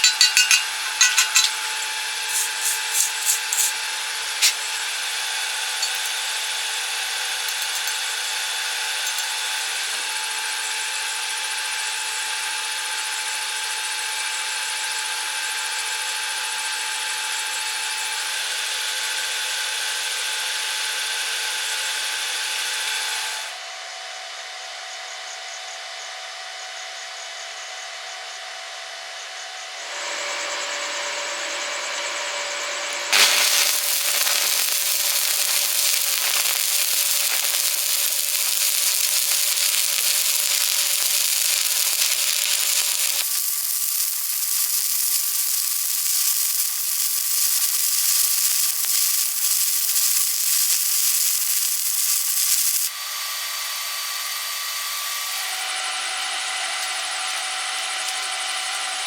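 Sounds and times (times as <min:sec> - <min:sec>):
welding arc crackling and hissing: 0:00.0 - 0:11.3, 0:32.9 - 0:55.6.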